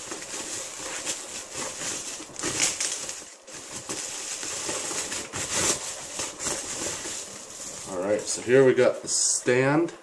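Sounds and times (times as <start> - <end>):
packaging wrap crinkling: 0.0 - 8.8.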